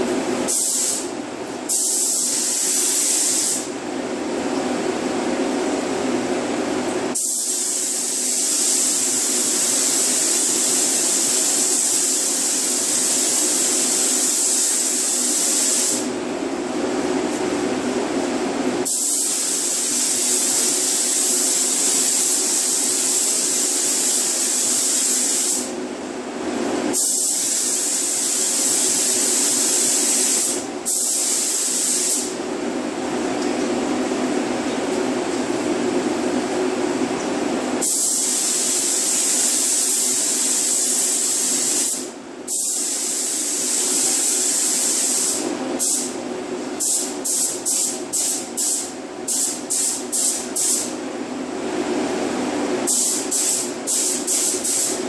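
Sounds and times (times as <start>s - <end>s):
spray gun hissing: 0.5s - 1.1s, 1.7s - 3.7s, 7.2s - 16.2s, 18.8s - 25.7s, 27.0s - 32.4s, 37.8s - 46.2s, 46.8s - 50.9s, 52.9s - 55.0s.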